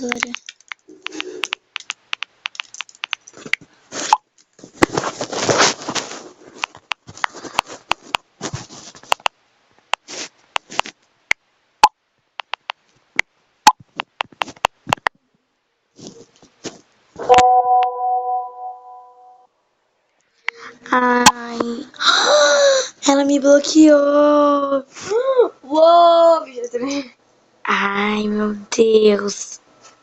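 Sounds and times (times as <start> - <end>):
typing taps and clicks: 0.0 - 3.3, 12.4 - 12.8
rustling noise: 3.3 - 9.3, 10.0 - 11.1, 15.9 - 17.3.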